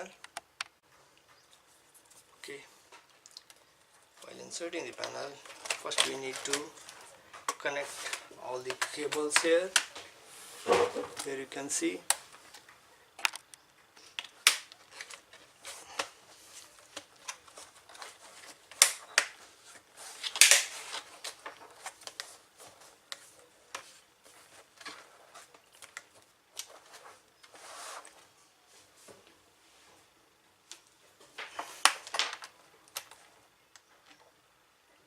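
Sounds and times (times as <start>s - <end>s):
plastic clicks and snaps: 0.2s - 0.8s, 12.1s - 15.2s, 31.8s - 34.2s.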